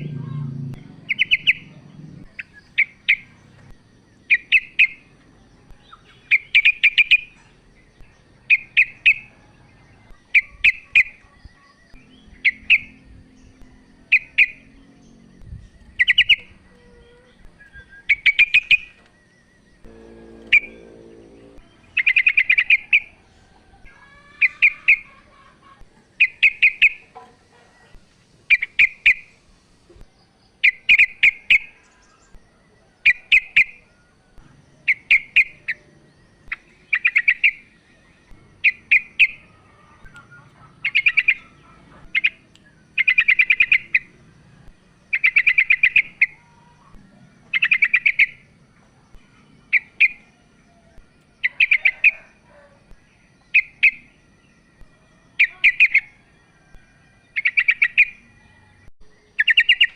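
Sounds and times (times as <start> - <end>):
bulbul chattering call: 0.0 - 3.7, 19.9 - 23.2.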